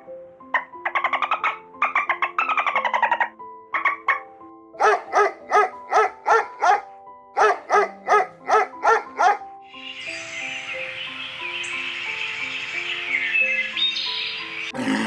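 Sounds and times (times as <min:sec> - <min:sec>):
background music: 0:00.0 - 0:15.0
dog barking: 0:04.8 - 0:09.5.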